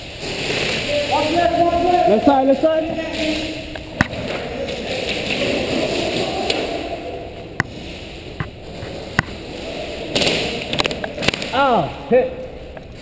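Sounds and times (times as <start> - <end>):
steady rustling noise: 0.0 - 13.0.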